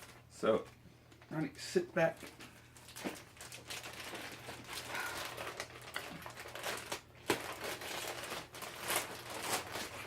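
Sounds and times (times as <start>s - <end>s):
packaging crinkling and rustling: 2.0s - 10.0s.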